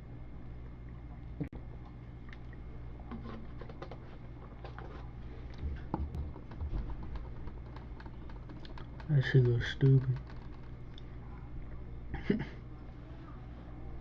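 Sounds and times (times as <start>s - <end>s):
low steady hum: 0.0s - 14.0s
computer keyboard clicking: 6.2s - 10.8s.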